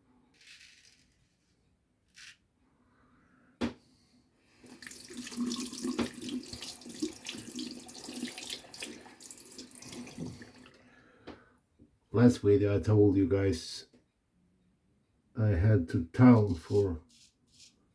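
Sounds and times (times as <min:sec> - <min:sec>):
tap running into sink: 0:04.8 - 0:10.6.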